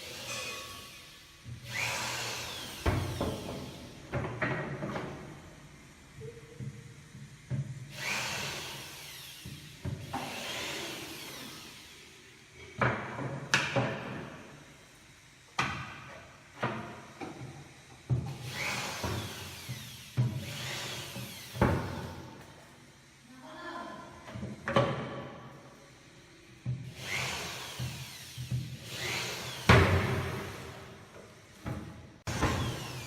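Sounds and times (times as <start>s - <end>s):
power drill driving screws: 1.6s - 3.9s, 7.9s - 12.0s, 18.3s - 22.2s, 26.9s - 30.9s, 32.3s - 33.0s.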